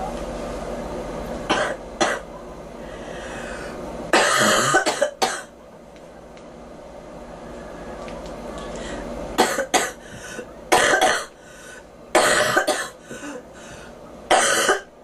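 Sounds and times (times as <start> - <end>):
girl coughing: 1.5 - 2.3, 4.1 - 5.5, 9.4 - 10.0, 10.7 - 11.4, 12.2 - 13.4, 14.3 - 14.9.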